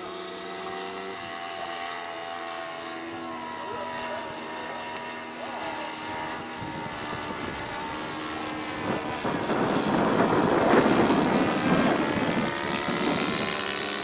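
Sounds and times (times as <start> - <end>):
model airplane engine running: 0.0 - 14.0.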